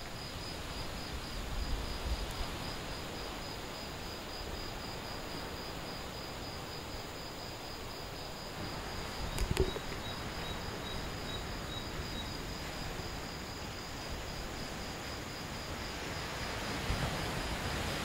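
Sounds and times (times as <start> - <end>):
insects chirping: 0.0 - 18.0
surf washing in: 8.5 - 18.0.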